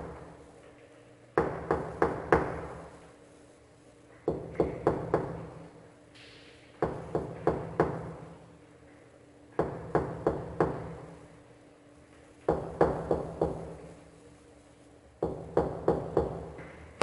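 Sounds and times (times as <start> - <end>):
knocking on a door: 9.6 - 10.9, 12.5 - 13.7, 15.2 - 16.5.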